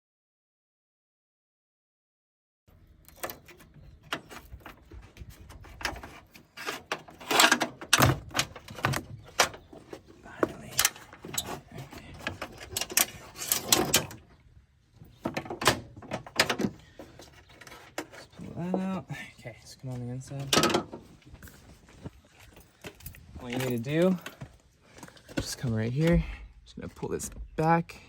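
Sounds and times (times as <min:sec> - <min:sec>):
metal clicks and rattles: 0:03.0 - 0:10.0, 0:10.7 - 0:14.3.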